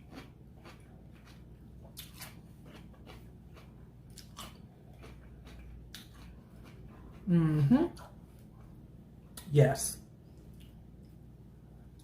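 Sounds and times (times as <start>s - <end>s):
crunchy chewing of food: 0.0s - 7.3s.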